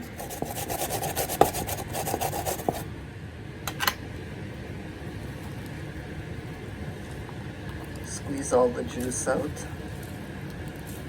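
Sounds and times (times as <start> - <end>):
vegetables rasping on grater: 0.0 - 2.8.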